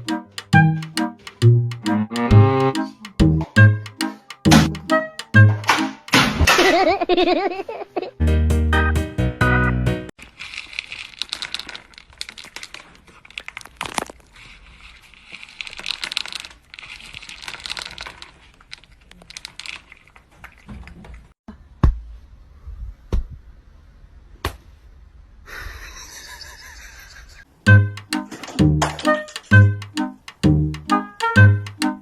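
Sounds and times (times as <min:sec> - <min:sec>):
sharp clicks: 0:00.0 - 0:06.2, 0:28.0 - 0:31.9
crinkly material crackling: 0:10.2 - 0:21.3.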